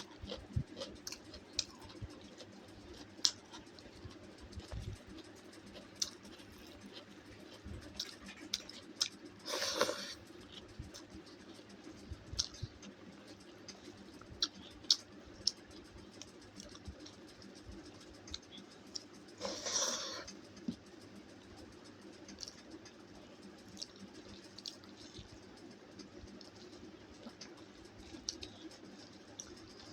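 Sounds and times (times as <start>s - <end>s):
chewing clicks and smacks: 0.0s - 29.9s.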